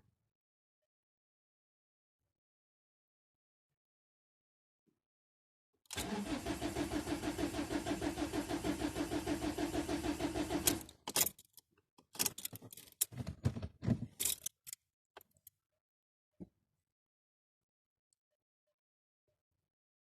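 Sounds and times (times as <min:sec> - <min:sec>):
starter motor cranking engine: 0:05.9 - 0:11.0
diesel engine sputtering: 0:06.0 - 0:10.9.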